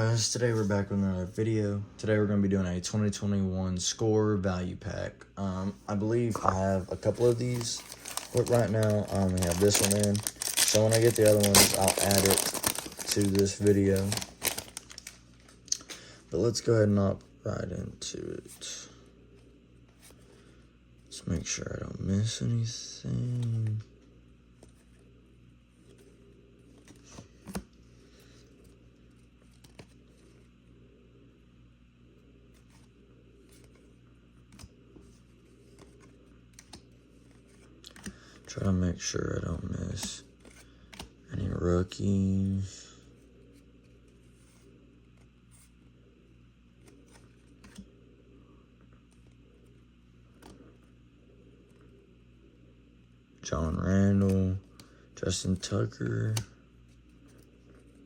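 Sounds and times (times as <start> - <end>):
low steady hum: 0.0 - 58.0
trading cards clicking and rustling: 6.4 - 15.9
wrapper crinkling and tearing: 7.2 - 15.2.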